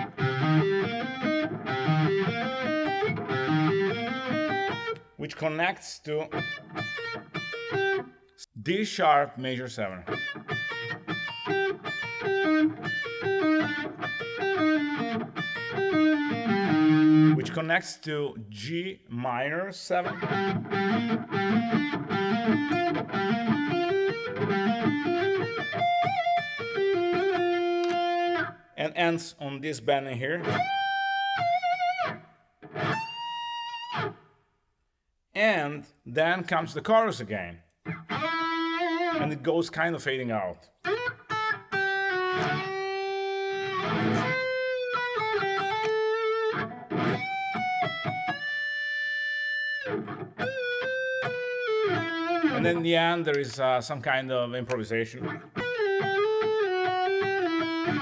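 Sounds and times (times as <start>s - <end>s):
electric guitar arpeggio: 0.0s - 5.0s, 6.3s - 8.2s, 10.0s - 17.4s, 20.0s - 28.6s, 30.4s - 34.2s, 37.9s - 39.3s, 40.8s - 53.5s, 55.1s - 58.0s.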